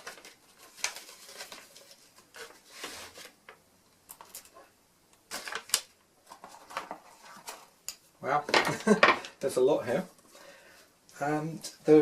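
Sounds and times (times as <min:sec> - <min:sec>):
rustling: 0:00.0 - 0:07.8.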